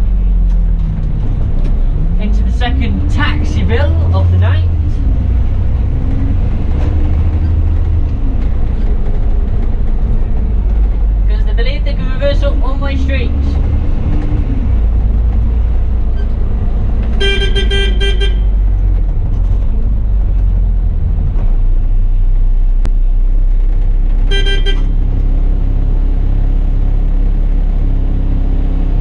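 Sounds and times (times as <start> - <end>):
bus engine rumble: 0.0 - 29.0
vehicle horn blasts: 17.2 - 18.6, 24.3 - 25.0.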